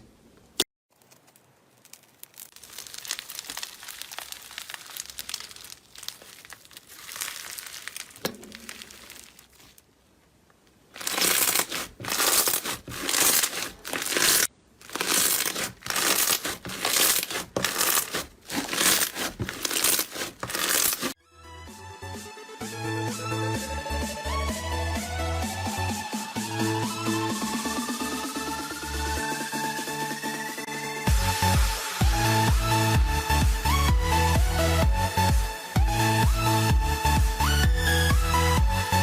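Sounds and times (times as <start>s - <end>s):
slime crackling when squeezed: 1.0s - 9.9s, 11.0s - 21.2s.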